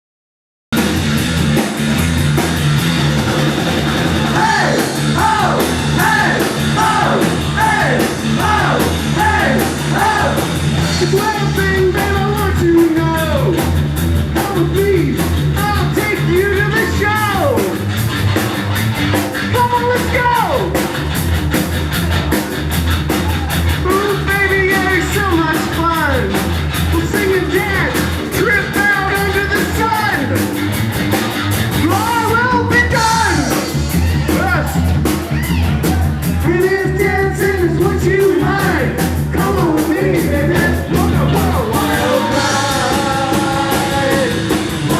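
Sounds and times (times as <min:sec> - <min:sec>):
rock band playing live: 0:00.7 - 0:44.9
person singing: 0:36.6 - 0:44.9.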